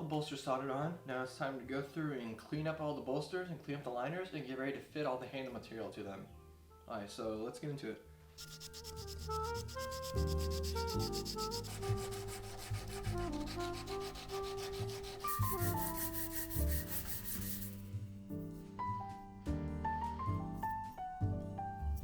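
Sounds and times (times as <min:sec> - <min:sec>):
background music: 0:06.2 - 0:22.0
sanding steel: 0:08.4 - 0:18.1.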